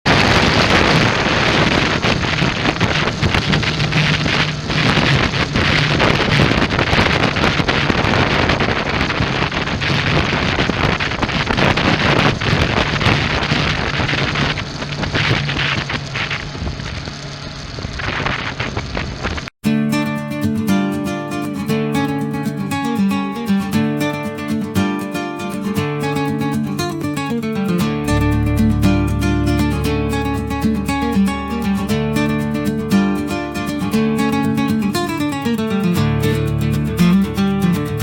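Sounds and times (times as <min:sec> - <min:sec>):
wind buffeting microphone: 0:00.1 - 0:19.5
motorcycle engine drone: 0:00.2 - 0:08.4.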